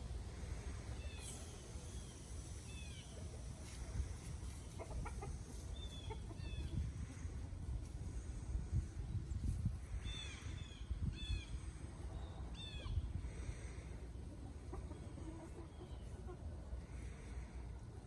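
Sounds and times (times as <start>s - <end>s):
steady low rumble: 0.0s - 15.2s
rooster clucking: 2.7s - 6.9s, 14.4s - 16.6s.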